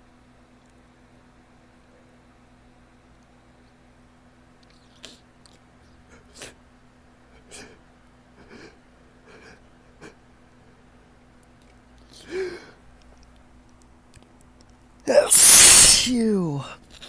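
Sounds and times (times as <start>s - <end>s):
voiced gasp: 15.1s - 16.8s.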